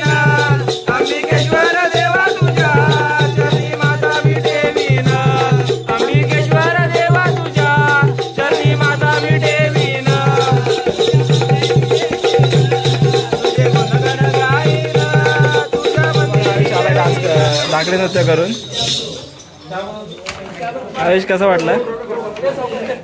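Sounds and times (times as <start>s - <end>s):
person singing: 0.0s - 17.6s
steady drum beat: 0.0s - 19.2s
rattling percussion: 0.0s - 22.7s.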